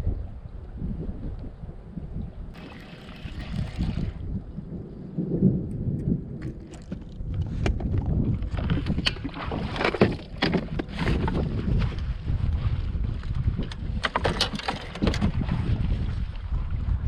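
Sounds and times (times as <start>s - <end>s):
wind buffeting microphone: 0.0s - 17.0s
motorboat engine rumble: 2.4s - 4.7s.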